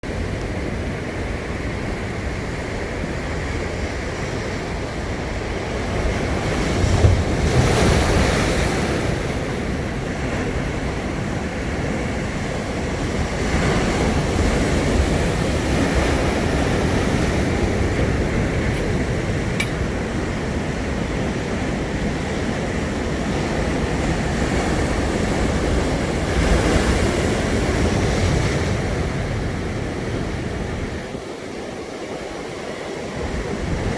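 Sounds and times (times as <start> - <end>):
sea waves breaking on shore: 0.1 - 33.9.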